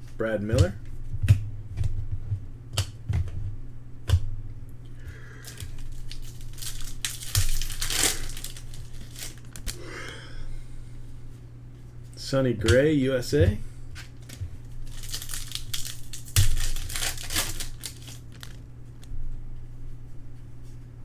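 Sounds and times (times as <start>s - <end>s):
steady low hum: 0.0s - 21.0s
cards clicking and tapping: 0.5s - 3.4s
wrapper crinkling and tearing: 5.4s - 9.8s, 14.1s - 19.1s.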